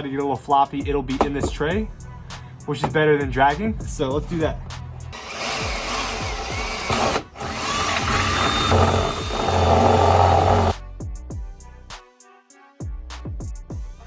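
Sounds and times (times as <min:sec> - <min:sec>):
background music: 0:00.0 - 0:14.0
power drill boring: 0:05.2 - 0:10.8.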